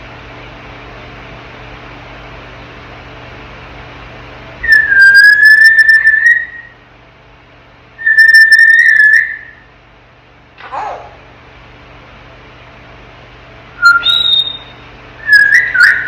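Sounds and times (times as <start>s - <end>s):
parrot whistling: 4.6s - 6.8s, 8.0s - 9.7s, 13.8s - 16.0s.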